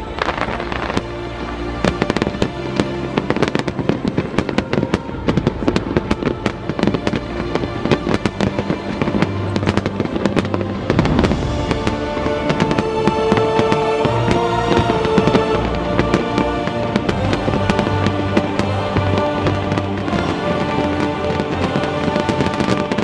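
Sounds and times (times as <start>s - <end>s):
fireworks bursting: 0.0s - 23.0s
music with held notes: 0.0s - 23.0s.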